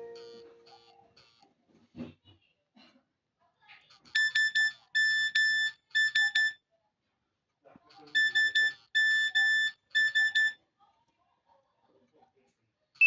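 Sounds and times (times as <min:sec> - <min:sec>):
electronic trill ringtone: 0:00.0 - 0:00.8, 0:04.2 - 0:06.6, 0:08.2 - 0:10.6.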